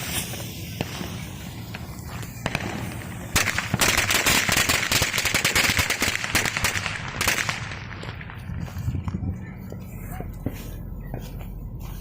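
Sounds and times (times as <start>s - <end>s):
firecrackers popping: 0.0s - 9.4s.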